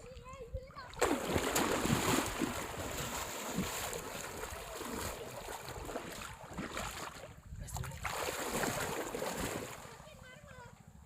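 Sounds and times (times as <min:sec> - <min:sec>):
water splashing and sloshing: 0:00.0 - 0:10.9.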